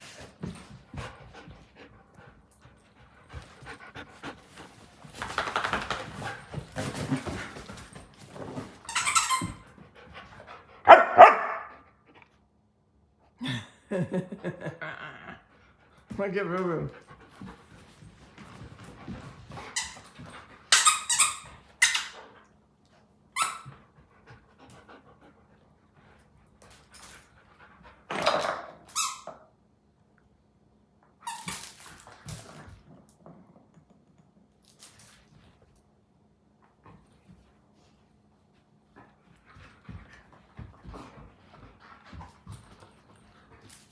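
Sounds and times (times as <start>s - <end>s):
dog panting: 0.5s - 7.6s, 24.0s - 26.4s
high-pitched squeaks: 8.8s - 9.6s.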